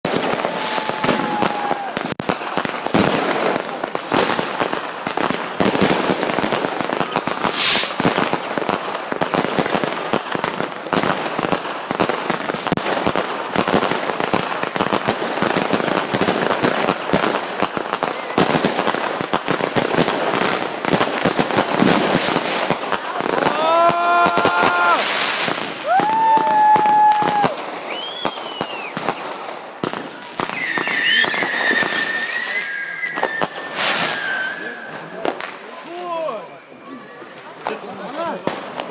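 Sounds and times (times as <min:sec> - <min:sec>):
fireworks cracking and banging: 0:00.0 - 0:36.1, 0:37.4 - 0:38.9
firework hiss: 0:06.7 - 0:08.6.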